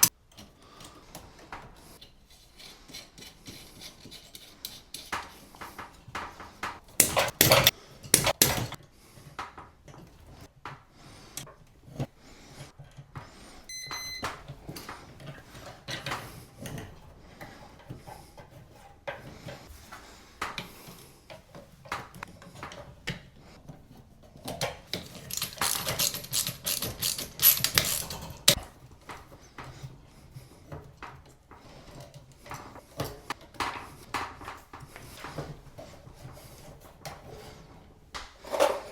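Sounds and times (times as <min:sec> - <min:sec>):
rasping or scraping: 0:01.8 - 0:05.8, 0:24.9 - 0:28.6
tools clicking and clattering: 0:04.2 - 0:08.8, 0:24.2 - 0:28.7.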